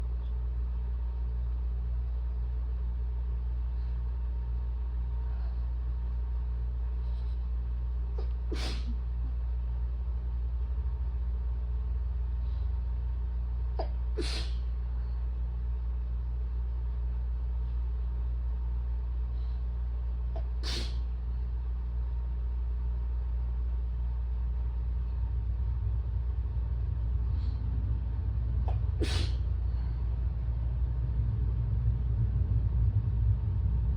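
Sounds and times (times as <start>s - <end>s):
steady low rumble: 0.0s - 33.9s
woman sneezing: 8.5s - 9.0s, 13.8s - 14.6s, 20.6s - 21.0s, 29.0s - 29.4s
short breath in: 14.2s - 14.6s, 20.6s - 21.0s, 29.0s - 29.5s.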